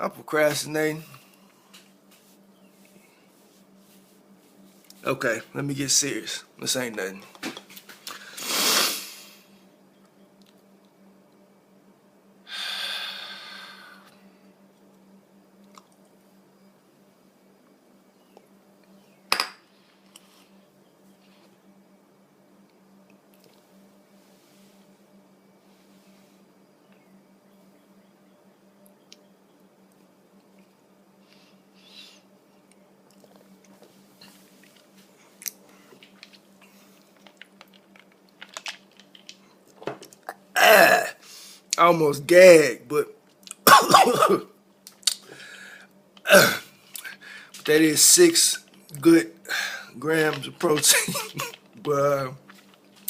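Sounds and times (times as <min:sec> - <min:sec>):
steady low hum: 0:00.0 - 0:53.0
wet mouth clicks and smacks: 0:44.8 - 0:45.3.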